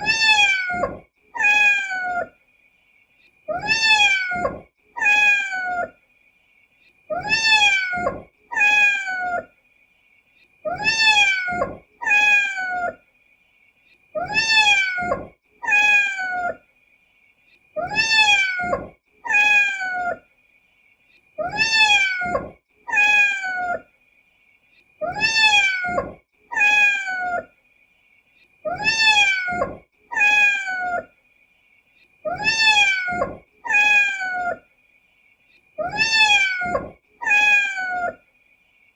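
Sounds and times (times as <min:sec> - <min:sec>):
kitten meowing: 0:00.0 - 0:02.3, 0:03.5 - 0:05.9, 0:07.1 - 0:09.5, 0:10.7 - 0:13.0, 0:14.2 - 0:16.6, 0:17.8 - 0:20.2, 0:21.4 - 0:23.8, 0:25.0 - 0:27.5, 0:28.7 - 0:31.1, 0:32.3 - 0:34.6, 0:35.8 - 0:38.2.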